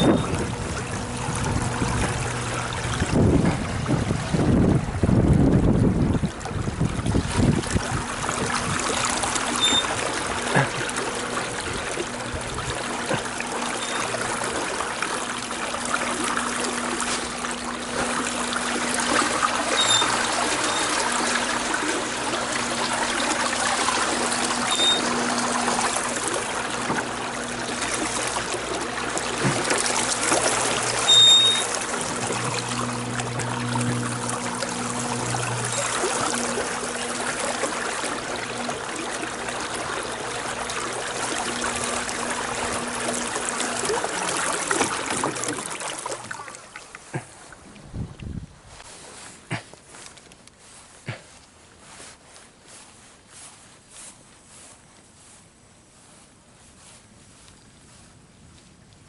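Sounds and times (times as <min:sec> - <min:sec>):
short high-pitched tones: 0:00.0 - 0:00.4, 0:09.6 - 0:09.9, 0:19.7 - 0:20.9, 0:24.6 - 0:25.2, 0:31.0 - 0:31.8
water trickling and lapping: 0:00.0 - 0:59.0.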